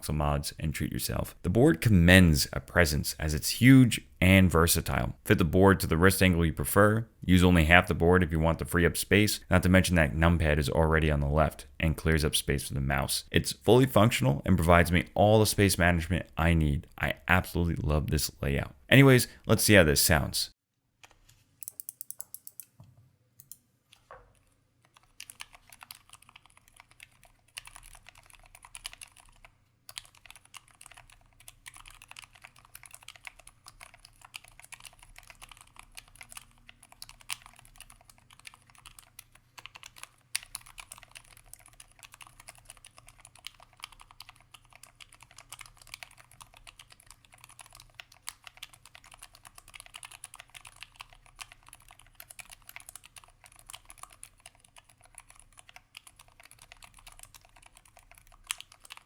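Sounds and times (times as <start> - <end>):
muted keyboard typing: 21.0 - 22.8, 24.3 - 59.0.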